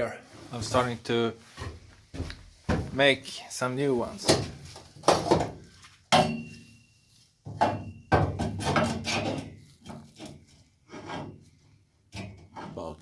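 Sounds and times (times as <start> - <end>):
metal brackets knocking and clanking: 4.2 - 6.6, 7.5 - 10.4.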